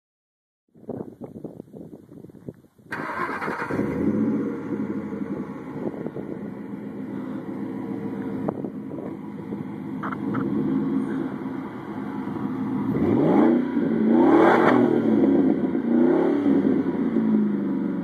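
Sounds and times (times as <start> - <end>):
engine starter cranking: 2.9 - 4.2
engine revving and idling: 3.0 - 18.0.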